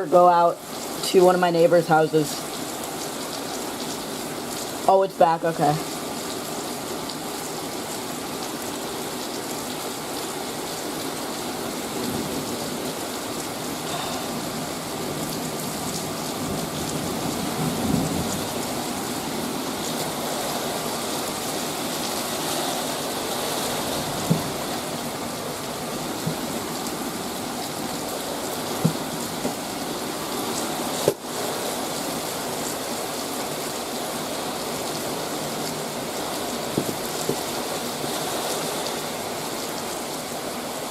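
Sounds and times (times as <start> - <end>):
heavy rain pouring: 0.0 - 40.9.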